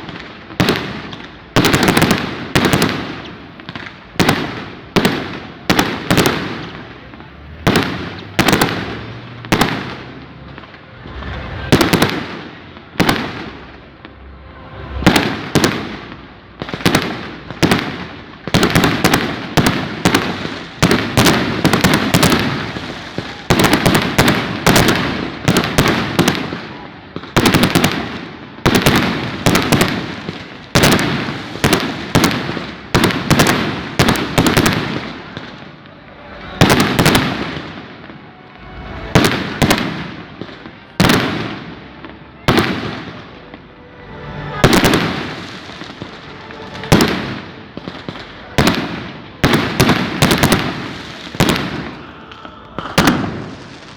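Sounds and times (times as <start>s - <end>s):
firecrackers banging: 0.0s - 53.9s.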